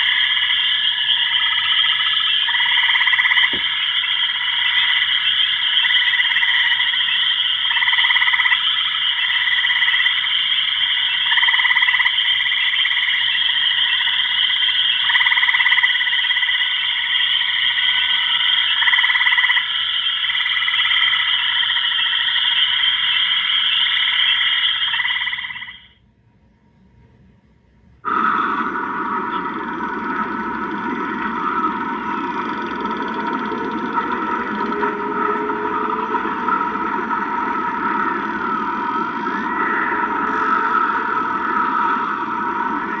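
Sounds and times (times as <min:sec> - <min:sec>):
high trilling animal calls: 0:28.1 - 0:43.0.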